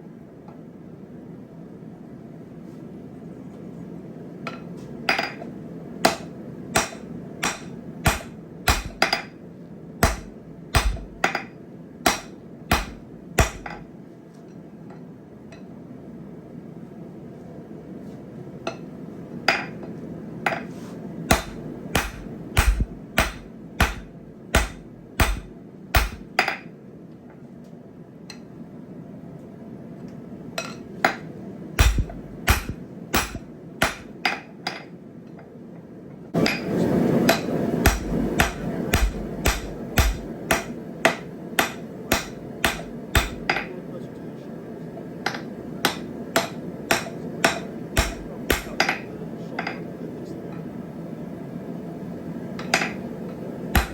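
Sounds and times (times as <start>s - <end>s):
hammer striking steel on anvil: 6.0s - 9.4s, 10.0s - 13.9s, 21.3s - 26.7s, 30.6s - 34.8s, 36.4s - 43.7s, 45.2s - 49.0s
steady rushing noise: 21.3s - 26.3s.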